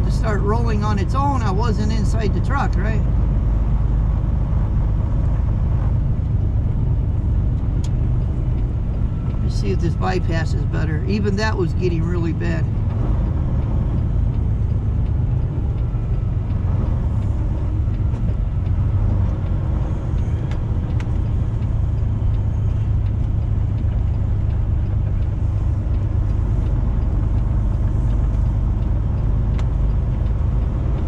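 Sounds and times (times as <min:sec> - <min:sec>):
truck engine and road rumble: 0:00.0 - 0:31.0
faint ticks: 0:12.8 - 0:31.0.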